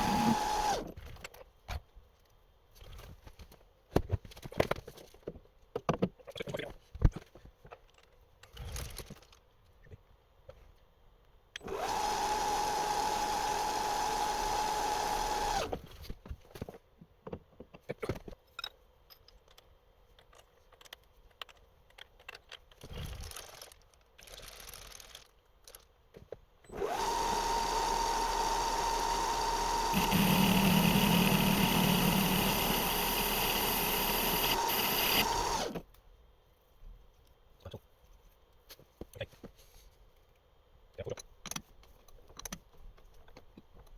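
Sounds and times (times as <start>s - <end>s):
electric machine whining: 0.0s - 0.9s, 11.6s - 15.8s, 26.7s - 35.8s.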